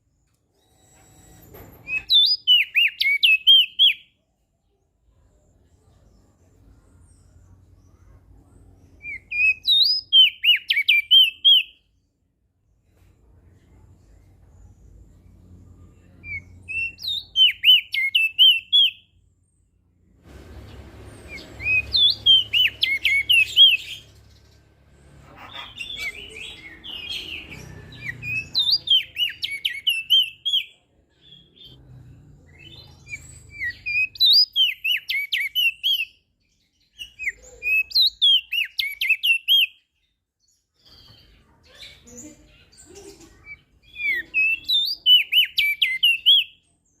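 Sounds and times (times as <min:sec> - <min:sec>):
bird twittering: 0:21.3 - 0:24.1.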